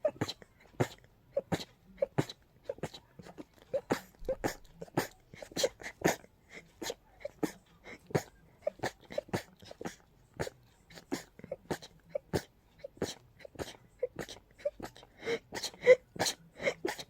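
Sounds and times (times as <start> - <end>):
person sneezing rapidly: 0.0 - 17.0
quick breaths: 13.0 - 17.0.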